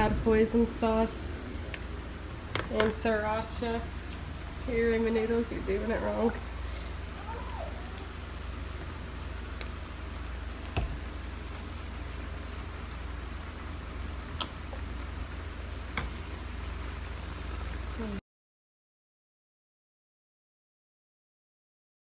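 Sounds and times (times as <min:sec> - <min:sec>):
low rumble: 0:00.0 - 0:09.4
sharp drips: 0:00.0 - 0:16.4
steady rain: 0:00.0 - 0:18.2.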